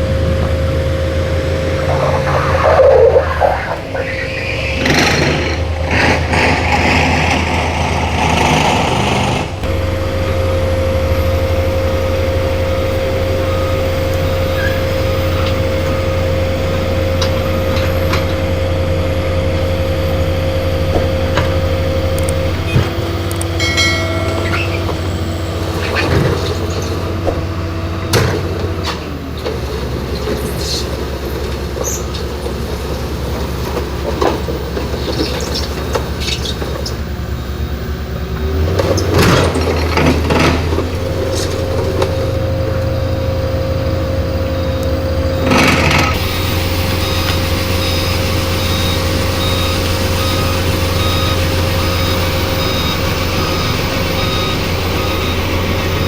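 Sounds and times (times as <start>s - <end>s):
heavy diesel engines running: 0.0s - 56.0s.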